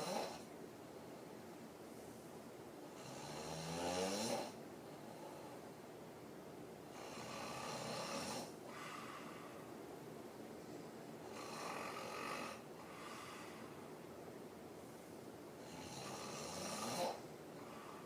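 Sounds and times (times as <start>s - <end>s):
woman snoring: 0.0s - 0.5s, 3.0s - 4.6s, 6.9s - 9.2s, 11.2s - 13.6s, 15.6s - 17.8s.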